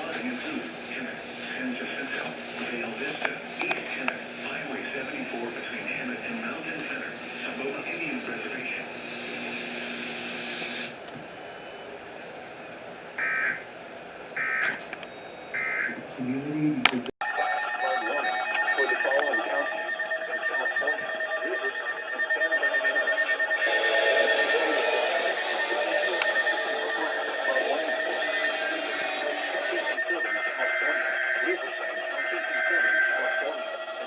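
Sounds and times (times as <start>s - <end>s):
data bursts: 17.2s - 34.0s
steady electronic alert tone: 17.2s - 34.0s
voice-like sound: 20.3s - 33.7s.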